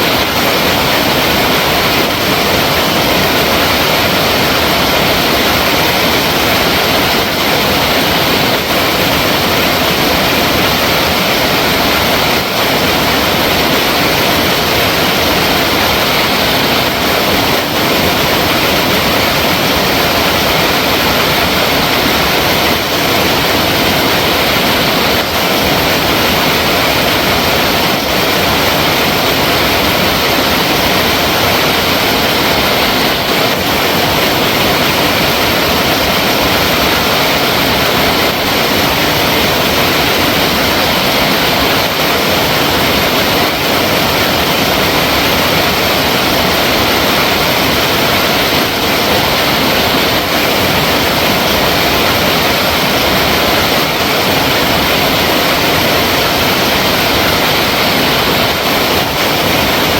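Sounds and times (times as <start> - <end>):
water rushing: 0.0 - 59.9.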